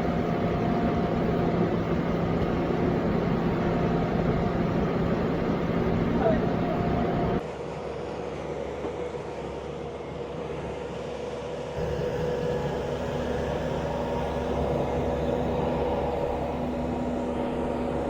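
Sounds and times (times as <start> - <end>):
heavy equipment engine running: 0.0 - 7.4, 11.8 - 18.0.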